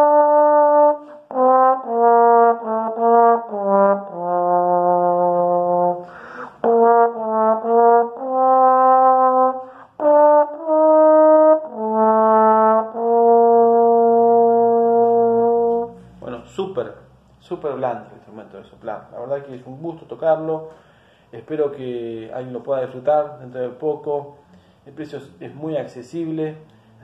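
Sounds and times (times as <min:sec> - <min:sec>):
solo trombone melody: 0:00.0 - 0:16.0
quick breaths: 0:06.0 - 0:06.6, 0:09.6 - 0:10.0, 0:20.7 - 0:21.4, 0:24.4 - 0:24.9, 0:26.7 - 0:27.0.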